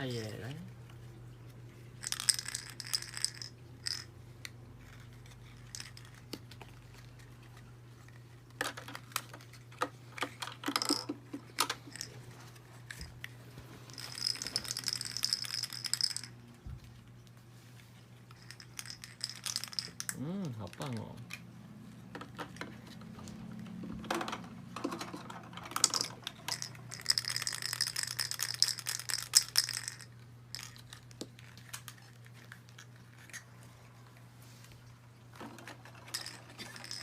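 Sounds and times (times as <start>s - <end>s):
plastic toy ice cubes clattering: 2.0s - 4.1s, 8.6s - 12.2s, 13.9s - 16.3s, 18.3s - 20.2s, 24.0s - 32.0s, 35.4s - 37.0s.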